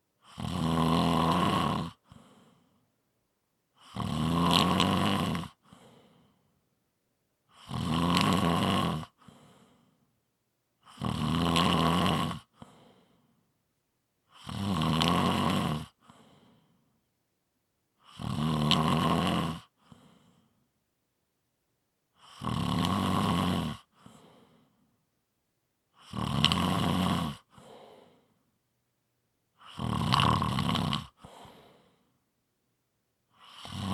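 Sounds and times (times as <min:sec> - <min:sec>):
person snoring: 0:00.2 - 0:02.6, 0:03.8 - 0:06.2, 0:07.5 - 0:09.4, 0:10.9 - 0:12.8, 0:14.3 - 0:16.3, 0:18.0 - 0:20.0, 0:22.2 - 0:24.4, 0:26.0 - 0:28.2, 0:29.6 - 0:32.0, 0:33.4 - 0:33.9.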